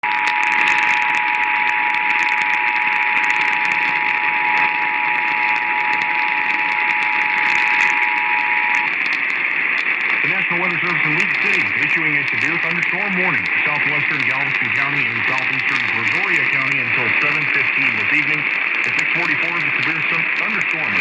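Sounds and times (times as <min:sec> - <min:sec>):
radio crackles: 0:00.0 - 0:21.0
loud radio hiss: 0:09.6 - 0:21.0.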